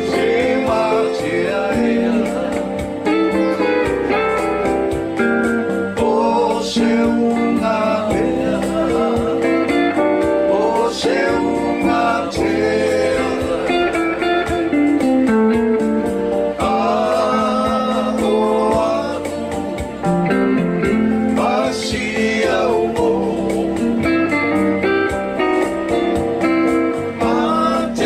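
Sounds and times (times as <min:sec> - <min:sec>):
person singing: 0:00.0 - 0:04.4, 0:05.9 - 0:15.0, 0:16.5 - 0:19.8, 0:21.2 - 0:24.4, 0:27.1 - 0:28.0
guitar accompaniment: 0:00.0 - 0:28.0
steady beat: 0:00.0 - 0:28.0.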